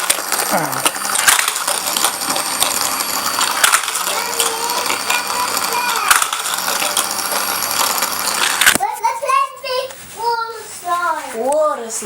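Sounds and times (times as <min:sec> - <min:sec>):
toy pieces rattling along track: 0:00.0 - 0:08.8.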